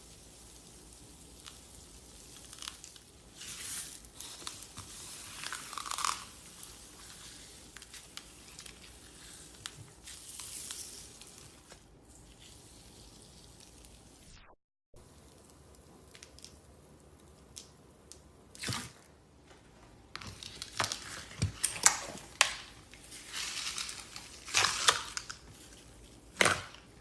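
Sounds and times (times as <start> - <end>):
crackling clicks and pops: 15.0 - 18.8.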